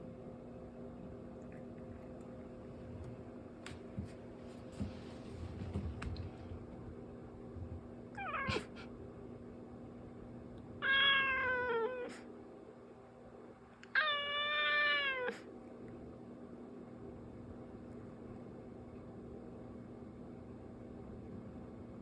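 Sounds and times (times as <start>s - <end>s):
cat meowing: 8.2s - 8.6s, 10.8s - 12.2s, 13.9s - 15.5s.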